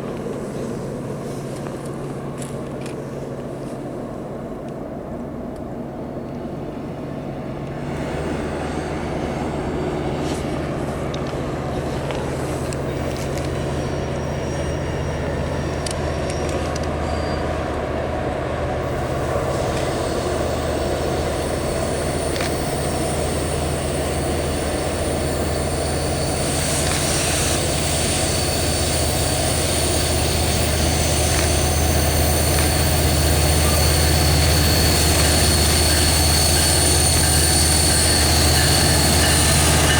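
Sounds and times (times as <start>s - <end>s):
locomotive engine drone: 5.6s - 39.9s
thin high whine: 18.8s - 39.9s.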